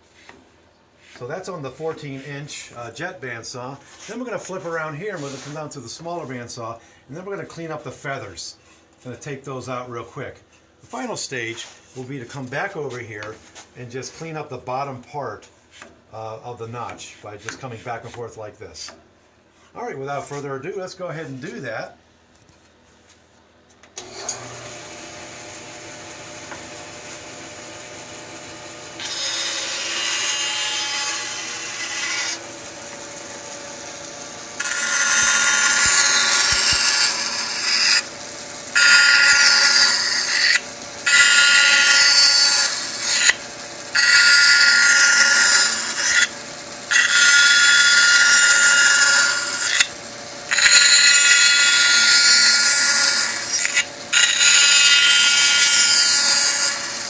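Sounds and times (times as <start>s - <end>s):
bandsaw cutting wood: 24.0s - 57.0s.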